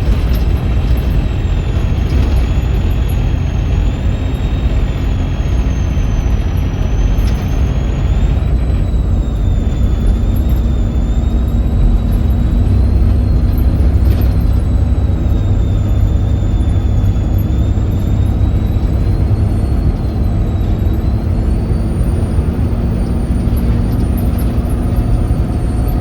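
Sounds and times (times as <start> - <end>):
bus diesel engine rumble: 0.0 - 26.0
turbocharger whistle: 0.0 - 26.0.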